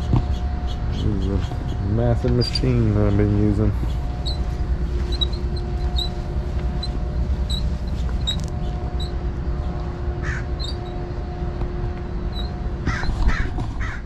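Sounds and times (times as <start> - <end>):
small birds chirping: 0.0 - 6.2, 6.8 - 11.1
low mechanical hum: 0.0 - 14.0
crow cawing: 10.2 - 10.8, 12.8 - 14.0.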